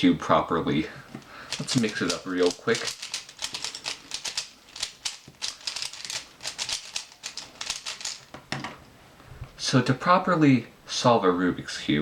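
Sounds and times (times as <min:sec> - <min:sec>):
puzzle cube plastic clicks: 0:01.5 - 0:08.4.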